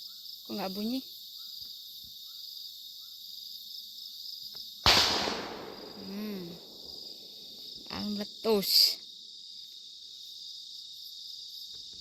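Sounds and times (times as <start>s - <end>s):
crickets chirping: 0.0s - 12.0s
firecracker bang: 4.9s - 7.0s.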